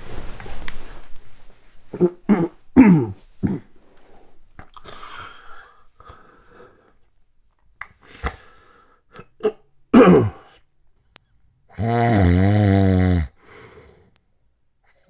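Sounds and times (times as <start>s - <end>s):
loud low snore: 11.8s - 13.6s.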